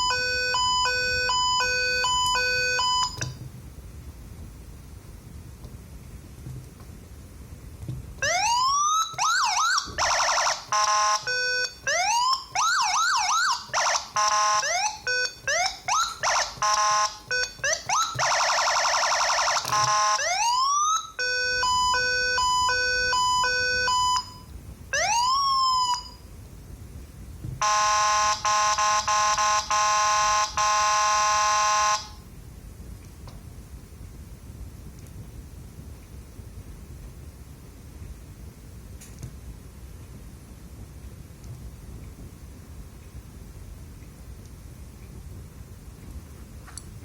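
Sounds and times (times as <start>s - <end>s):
electronic police siren: 0.0s - 3.4s, 8.2s - 26.2s, 27.6s - 32.2s
buzzing horn tone: 27.6s - 32.2s.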